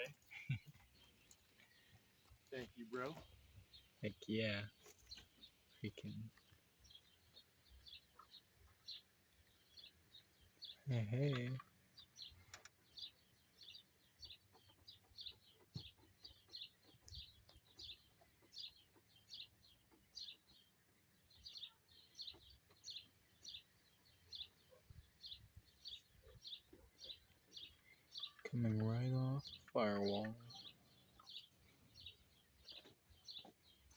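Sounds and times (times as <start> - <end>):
faint bird chirping: 0.0 - 33.9.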